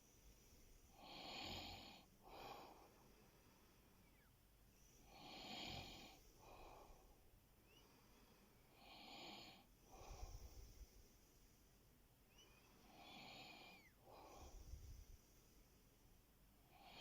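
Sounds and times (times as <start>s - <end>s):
man snoring: 1.0s - 2.0s, 5.1s - 6.2s.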